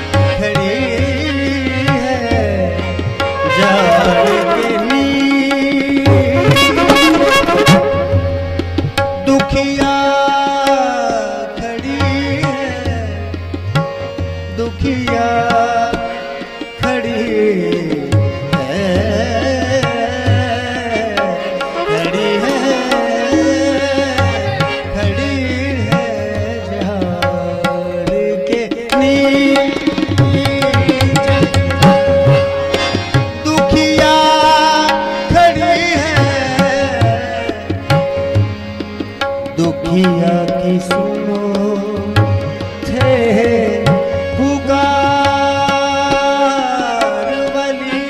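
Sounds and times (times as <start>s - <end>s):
harmonium held note: 0.0s - 48.0s
tabla: 0.0s - 48.0s
person singing ornamented vocal: 0.6s - 8.3s, 33.4s - 37.8s.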